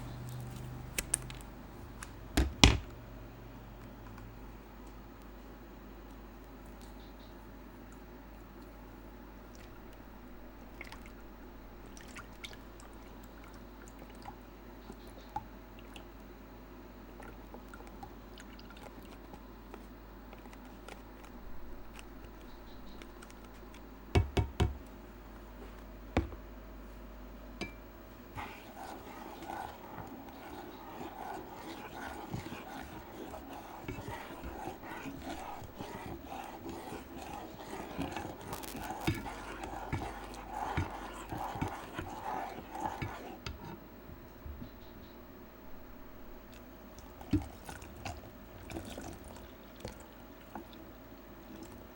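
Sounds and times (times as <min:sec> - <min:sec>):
low steady hum: 0:00.0 - 0:51.9
liquid sounds: 0:09.4 - 0:16.2, 0:17.1 - 0:23.9, 0:27.6 - 0:43.7, 0:45.7 - 0:51.9.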